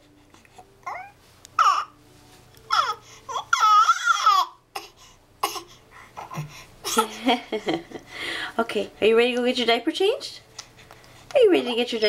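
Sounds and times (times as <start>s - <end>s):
baby squealing and babbling: 0.8s - 2.0s, 2.7s - 4.6s.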